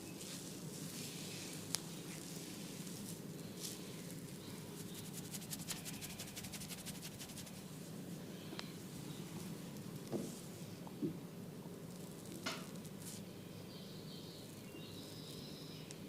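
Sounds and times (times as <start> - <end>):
hands rubbing hair: 4.8 - 7.7.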